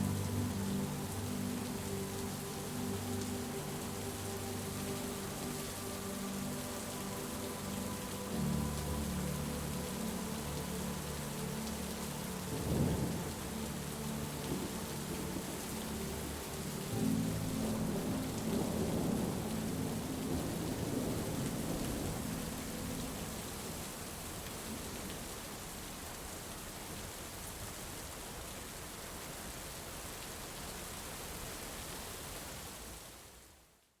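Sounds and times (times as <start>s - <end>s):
soft held music chord: 0.0s - 23.9s
steady rain falling: 0.0s - 34.0s.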